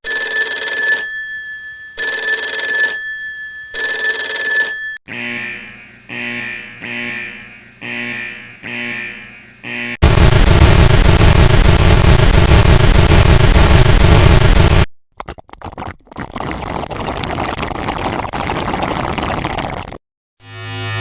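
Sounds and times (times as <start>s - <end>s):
crackling noise: 10.0s - 14.9s
harsh distorted rumbling: 10.0s - 14.9s.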